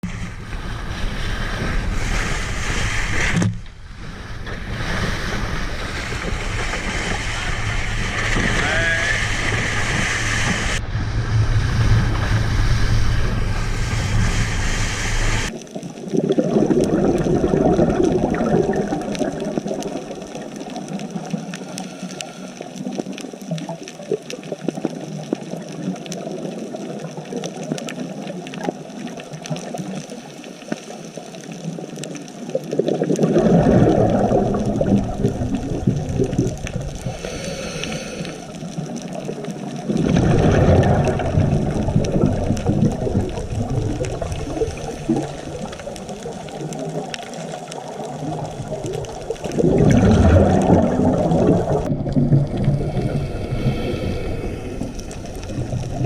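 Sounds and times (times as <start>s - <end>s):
wind noise: 0.0s - 15.5s
rushing water: 0.0s - 56.0s
underwater bubbling: 0.0s - 56.0s
small clicks underwater: 15.4s - 56.0s.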